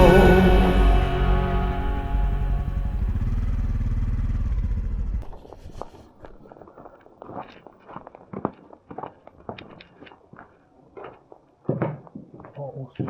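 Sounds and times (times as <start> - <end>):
motorcycle engine running: 0.0 - 5.3.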